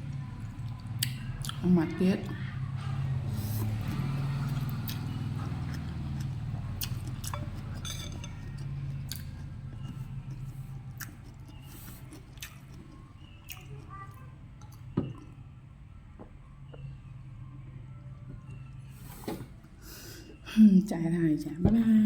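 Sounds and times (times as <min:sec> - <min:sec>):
low steady hum: 0:00.0 - 0:22.0
person chewing noodles: 0:03.6 - 0:15.4.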